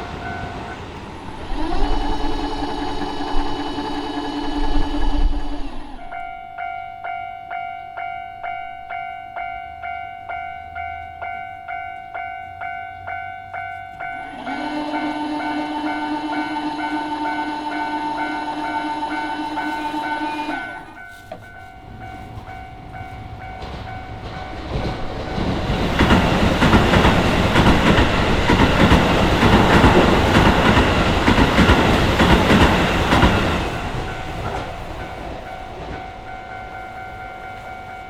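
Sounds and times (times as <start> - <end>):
level crossing warning bell: 0.0 - 38.0
train wheels clacking over rail joints: 14.1 - 38.0.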